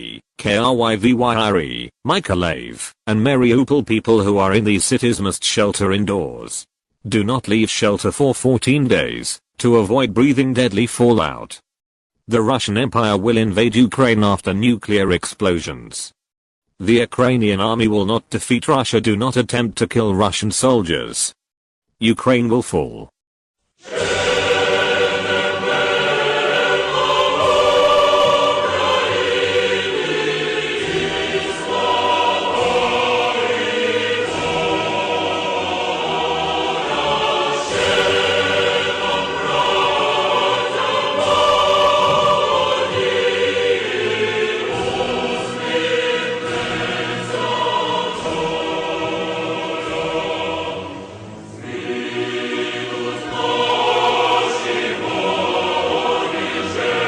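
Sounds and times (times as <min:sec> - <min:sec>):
choir singing sustained chords: 0:23.8 - 0:57.0.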